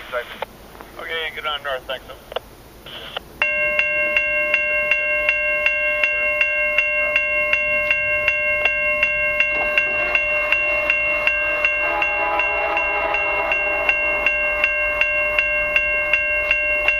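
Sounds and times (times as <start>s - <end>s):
level crossing warning bell: 3.4s - 16.9s.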